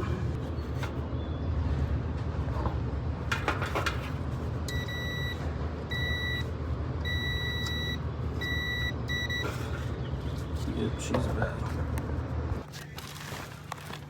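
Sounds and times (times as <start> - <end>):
multimeter beeps: 4.7 - 9.5.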